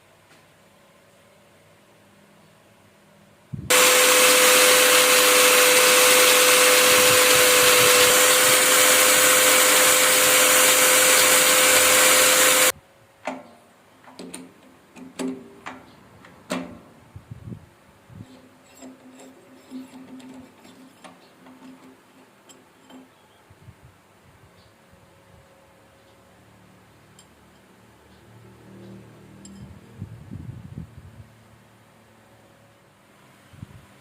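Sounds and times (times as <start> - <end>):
power tool running with hiss: 3.7 - 12.7.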